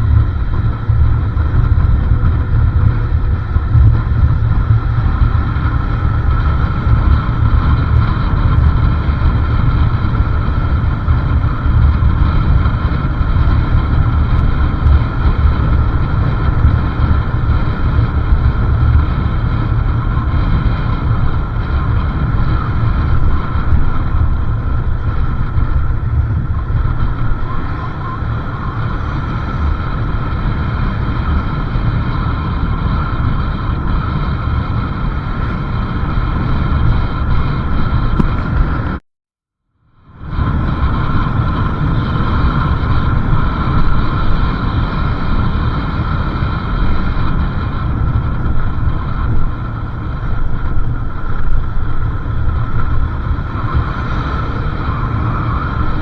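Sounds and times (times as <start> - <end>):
motorcycle engine running: 0.0 - 39.0, 40.2 - 56.0
road noise: 0.0 - 39.0, 40.2 - 56.0
wind buffeting microphone: 0.0 - 39.0, 40.1 - 56.0.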